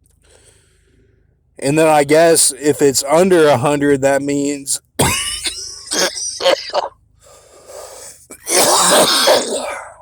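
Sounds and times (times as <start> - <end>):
quiet breath: 0.2 - 1.5, 7.2 - 8.3
man coughing: 5.0 - 6.9, 8.3 - 10.0.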